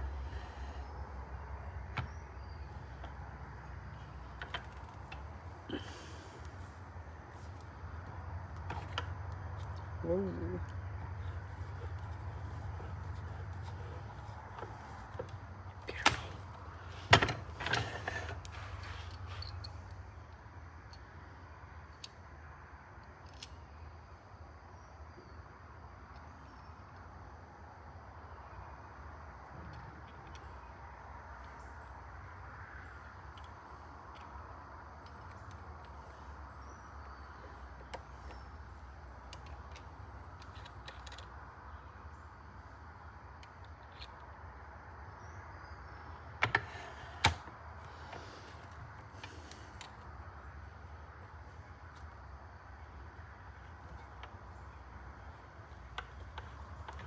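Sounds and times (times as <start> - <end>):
steady low hum: 0.0 - 57.0
small parts clicking: 32.2 - 42.1, 43.3 - 44.5.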